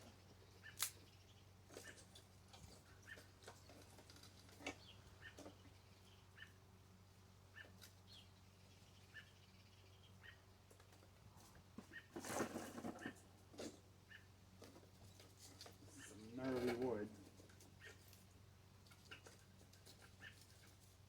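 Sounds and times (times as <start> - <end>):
small bird chirping: 0.0 - 11.1, 14.0 - 16.6, 17.3 - 21.0.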